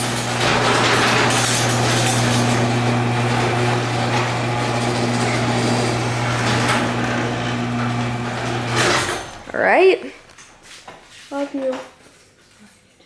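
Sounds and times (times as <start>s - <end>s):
chain and door rattling: 0.0s - 2.6s, 8.7s - 9.5s, 11.6s - 13.0s
garage door opener motor hum: 0.0s - 9.6s.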